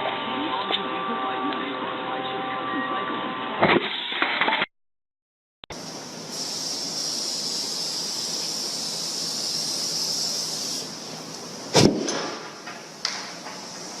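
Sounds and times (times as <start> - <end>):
high hiss: 5.7 - 11.3
sharp bang: 11.7 - 12.6.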